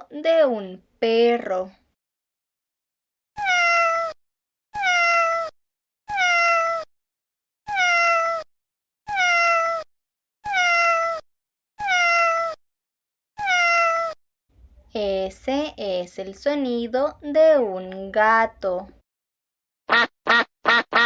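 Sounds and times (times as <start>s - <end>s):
cat meowing: 3.4s - 4.2s, 4.8s - 6.9s, 7.7s - 8.5s, 9.1s - 11.2s, 11.8s - 12.6s, 13.4s - 14.2s.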